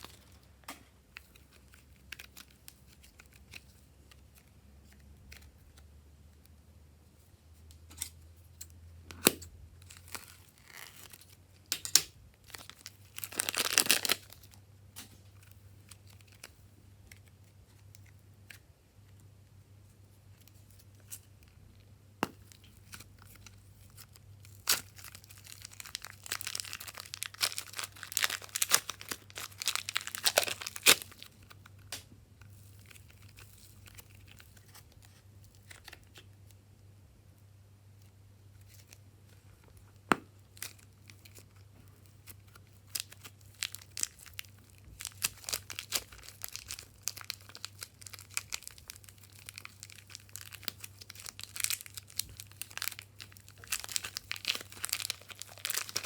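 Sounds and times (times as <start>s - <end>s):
slime crackling and tearing: 9.2s - 14.6s, 22.4s - 36.2s, 40.6s - 56.0s.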